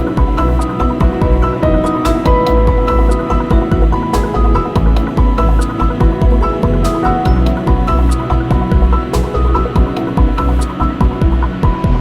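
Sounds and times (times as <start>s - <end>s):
music with pulsing bass beat: 0.0s - 12.0s.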